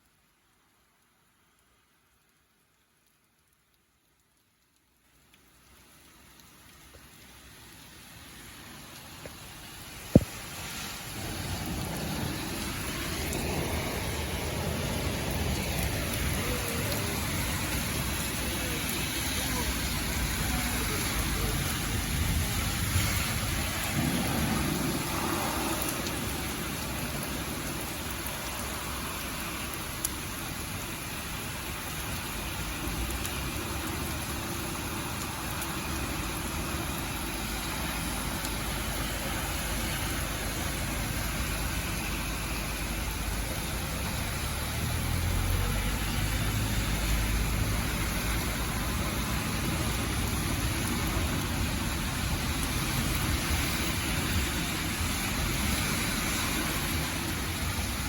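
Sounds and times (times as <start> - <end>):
steady rain falling: 0.0 - 58.0
motor vehicle rumble: 9.2 - 31.3.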